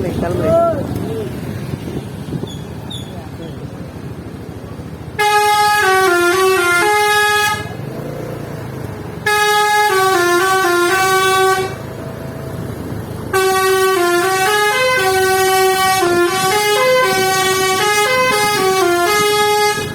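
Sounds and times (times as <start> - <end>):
multi-tone bus horn melody: 5.1 - 8.1, 9.2 - 12.0, 13.3 - 19.9.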